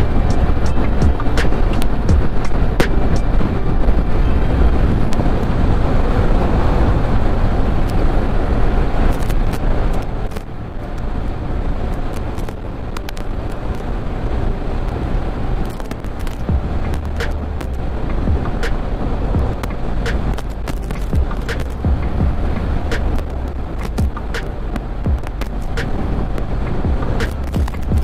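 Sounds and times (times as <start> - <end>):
motorcycle engine drone: 0.0 - 28.0
road rumble: 0.0 - 28.0
wind: 0.0 - 28.0
clicks: 15.6 - 28.0.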